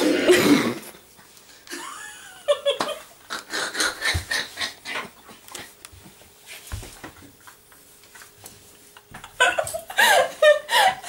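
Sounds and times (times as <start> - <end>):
person laughing: 1.7 - 5.0, 9.0 - 11.0.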